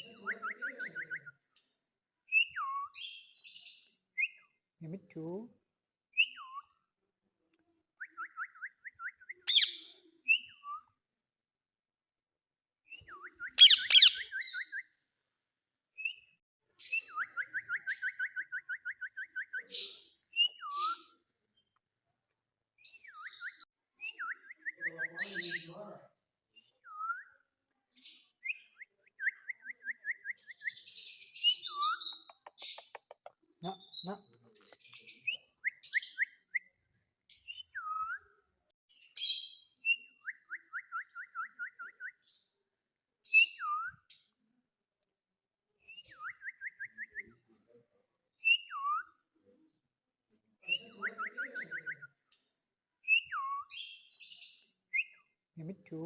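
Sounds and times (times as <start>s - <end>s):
parakeet whistling: 9.5s - 9.8s, 13.6s - 14.6s
parakeet harsh screeches: 13.6s - 14.2s.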